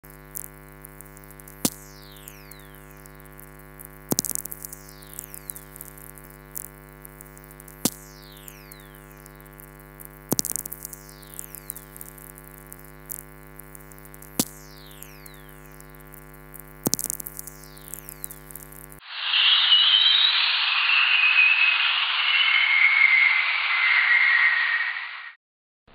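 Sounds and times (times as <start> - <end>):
crackling clicks: 0.1 - 19.0
steady hum: 17.4 - 24.5
falling whistling tones: 19.0 - 25.4.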